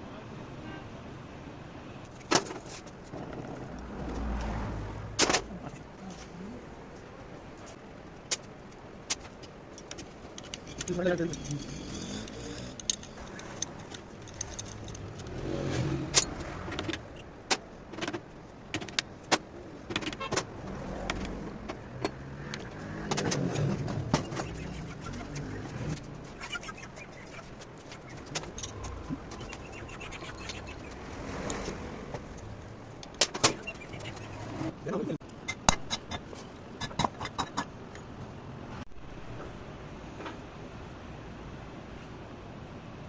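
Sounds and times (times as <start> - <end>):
metallic clicks and knocks: 8.3 - 26.2.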